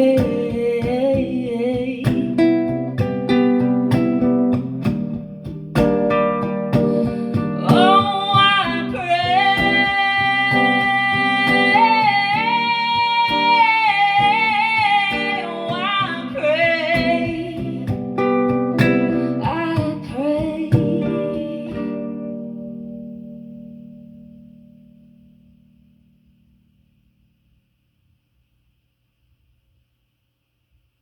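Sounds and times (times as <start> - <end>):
woman singing without words: 0.0 - 3.1, 6.5 - 22.7
acoustic guitar strumming: 0.0 - 27.3.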